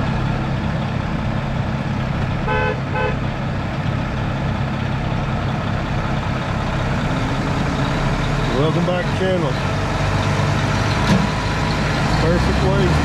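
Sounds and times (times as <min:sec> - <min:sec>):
heavy machine engine running: 0:00.0 - 0:13.0
horn beeps: 0:02.5 - 0:03.2.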